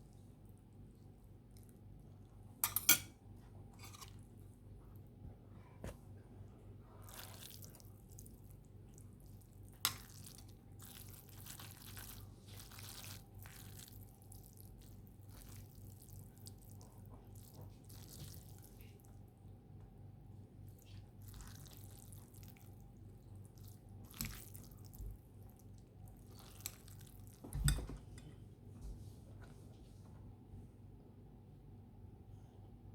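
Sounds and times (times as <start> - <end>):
low steady hum: 0.0 - 32.9
wet noodle slurping: 7.0 - 8.3.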